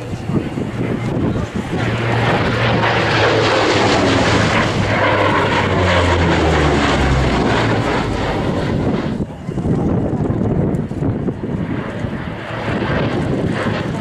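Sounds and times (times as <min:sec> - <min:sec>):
propeller plane engines flyby: 0:00.0 - 0:14.0.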